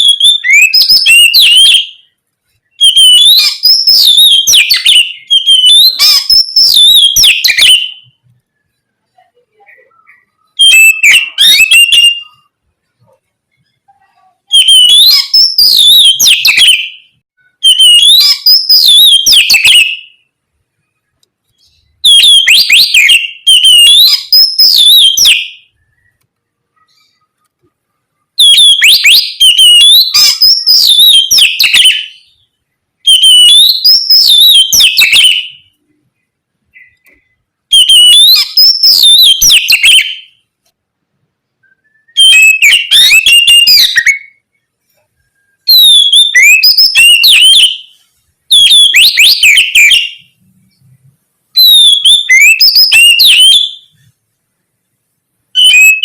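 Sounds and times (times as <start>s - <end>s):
bird singing whistled phrases: 0.0s - 2.1s, 2.7s - 8.2s, 9.7s - 12.5s, 14.5s - 20.3s, 21.6s - 26.2s, 28.4s - 32.4s, 33.0s - 35.7s, 36.8s - 40.4s, 41.6s - 44.4s, 45.3s - 50.4s, 51.6s - 53.9s, 55.6s - 56.0s.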